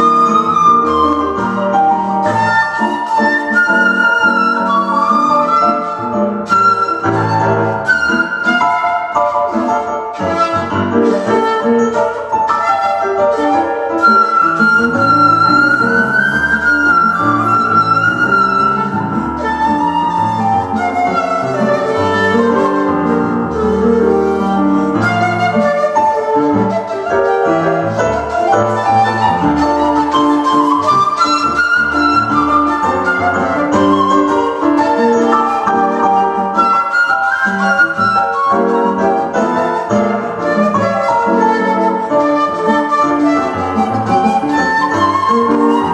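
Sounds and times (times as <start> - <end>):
bamboo flute melody: 0.0 - 45.9
piano accompaniment: 0.0 - 45.9.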